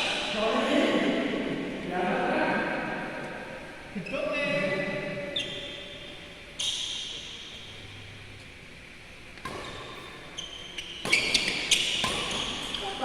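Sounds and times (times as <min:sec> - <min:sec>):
court shoes squeaking: 0:05.2 - 0:13.0
shuttlecock hits: 0:09.4 - 0:10.1, 0:11.0 - 0:12.9.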